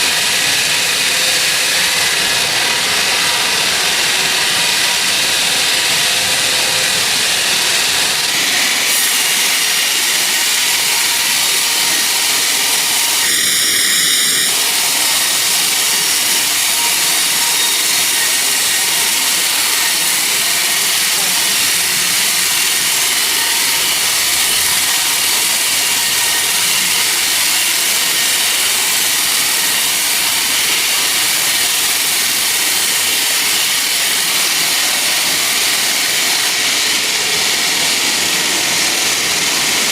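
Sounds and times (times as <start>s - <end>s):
sawmill saw cutting log: 0.0s - 39.9s
high squeal: 10.5s - 20.3s.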